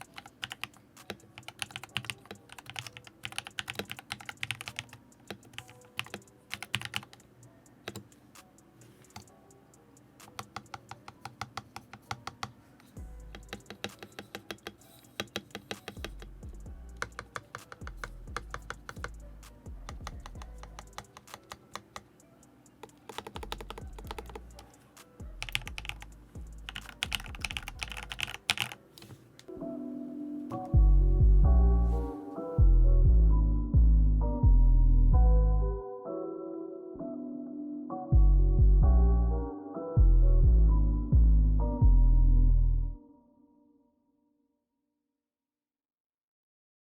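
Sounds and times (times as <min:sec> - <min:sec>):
mechanical keyboard typing: 0:00.0 - 0:08.2, 0:10.2 - 0:12.5, 0:13.3 - 0:22.1, 0:22.8 - 0:29.1.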